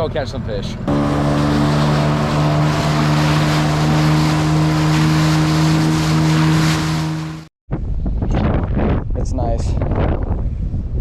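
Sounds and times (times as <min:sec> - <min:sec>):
outboard motor running: 0:00.9 - 0:07.5
rush of wind and water: 0:00.9 - 0:11.0.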